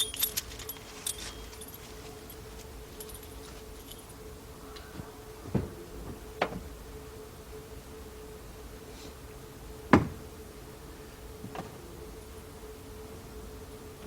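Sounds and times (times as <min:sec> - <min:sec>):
car keys jingling: 0:00.0 - 0:04.1
faint steady hum: 0:00.0 - 0:14.0.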